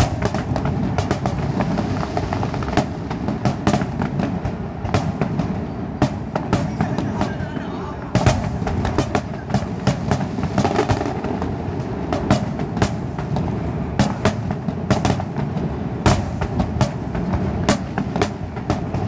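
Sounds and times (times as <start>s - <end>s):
fireworks bangs and crackles: 0.0s - 19.0s
rumble of distant bursts: 3.2s - 14.1s.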